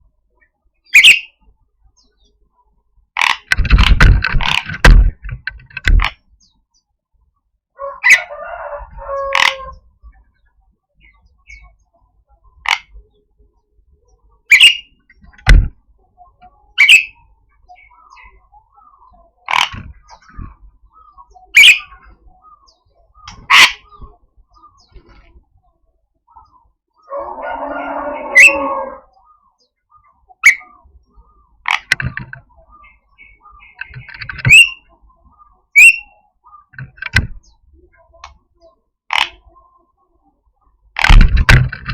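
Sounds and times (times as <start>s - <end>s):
myna harsh rasping calls: 7.8s - 9.8s, 27.1s - 29.2s
whistled bird notes: 27.1s - 29.5s, 35.7s - 36.7s.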